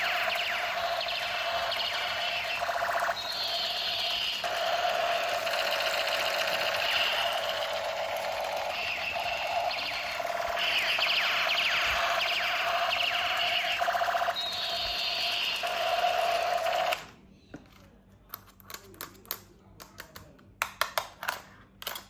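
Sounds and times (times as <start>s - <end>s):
warbling chirping electronic sweeps: 0.0s - 17.0s.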